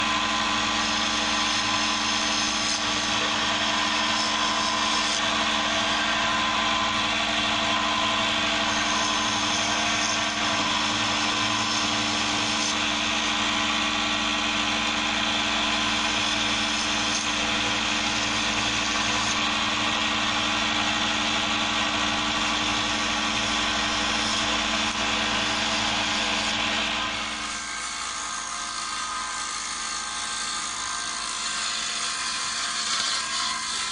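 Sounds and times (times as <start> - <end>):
planer motor humming and whirring: 0.0 - 33.9.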